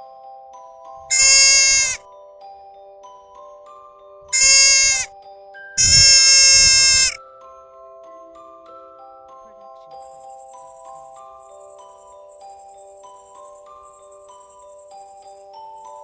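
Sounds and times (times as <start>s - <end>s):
animal calling: 1.1s - 2.0s, 4.4s - 5.1s, 5.8s - 7.2s, 10.0s - 16.0s.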